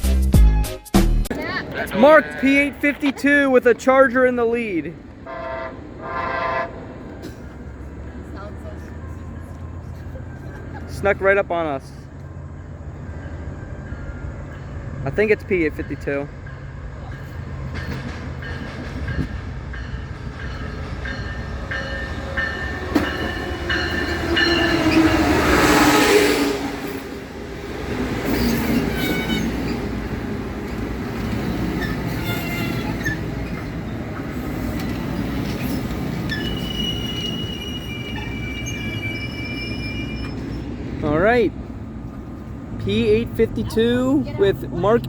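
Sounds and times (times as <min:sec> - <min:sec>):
diesel locomotive passing: 0:01.3 - 0:45.0
train coaches rolling: 0:01.3 - 0:45.0
train brakes squealing: 0:17.0 - 0:26.6, 0:28.2 - 0:30.0, 0:30.7 - 0:40.9.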